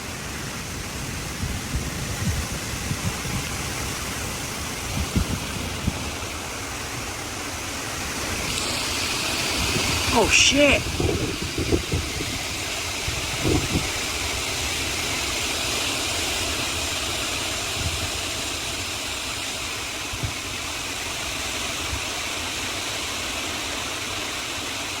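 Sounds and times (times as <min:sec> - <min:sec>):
storm winds roaring: 0:00.5 - 0:15.1.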